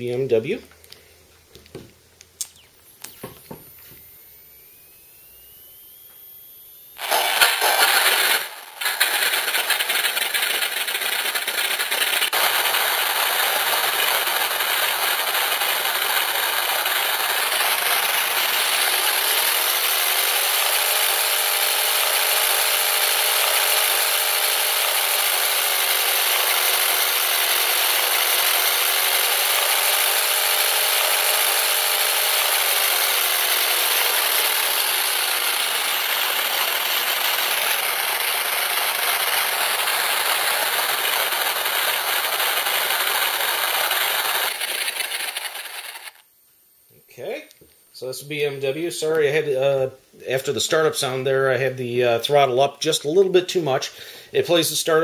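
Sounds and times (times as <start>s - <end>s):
simulated engine from small speaker: 2.4s - 46.2s.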